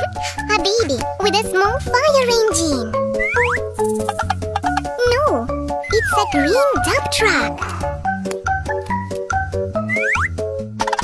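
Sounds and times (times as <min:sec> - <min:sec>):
upbeat children's music: 0:00.0 - 0:11.0
rattling shaker: 0:03.8 - 0:04.4.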